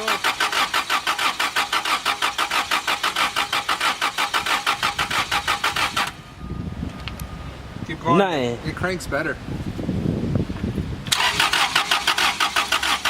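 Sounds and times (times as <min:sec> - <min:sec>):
engine cranking by starter: 0:00.0 - 0:06.2, 0:11.0 - 0:13.0.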